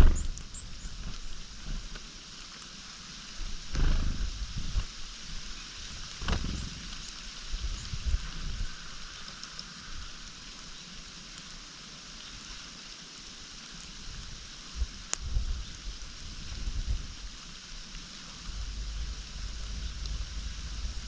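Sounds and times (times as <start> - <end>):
low rumbling: 0.0 - 1.9, 3.5 - 5.0, 6.1 - 8.7, 18.4 - 21.0
steady hiss: 0.0 - 21.0
sharp knock: 3.7 - 4.3.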